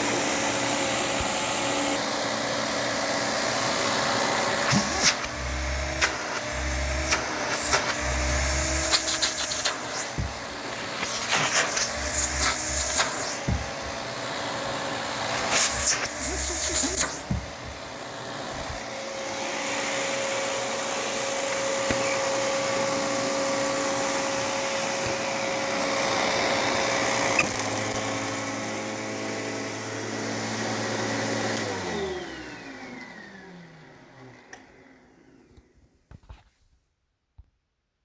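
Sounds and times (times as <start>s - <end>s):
upright vacuum running: 0.0s - 35.6s
suction motor winding down whine: 3.7s - 19.4s.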